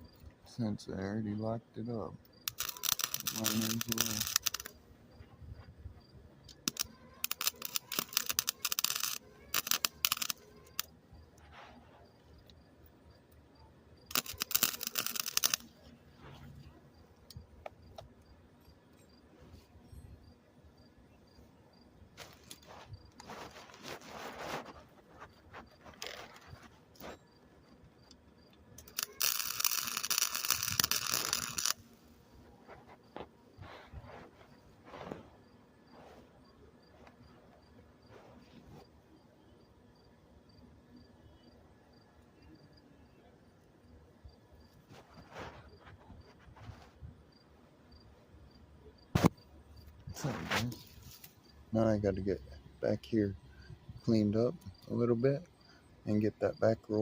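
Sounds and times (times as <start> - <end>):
arc welder crackling: 1.9 - 5.3, 6.4 - 11.0, 14.0 - 18.1, 28.0 - 33.3
metal parts scraping and clicking: 2.5 - 4.8, 6.5 - 10.9, 14.1 - 15.8, 28.8 - 31.8.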